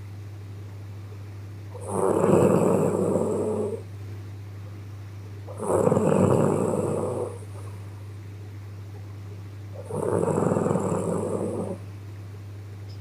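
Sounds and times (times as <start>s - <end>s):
steady low hum: 0.0s - 13.0s
woman snoring: 1.8s - 3.8s, 5.5s - 7.5s, 9.8s - 11.8s.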